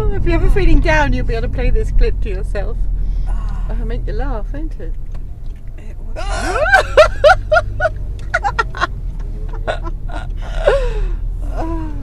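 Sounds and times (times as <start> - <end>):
car engine and road drone: 0.0 - 12.0
women giggling: 6.2 - 11.0.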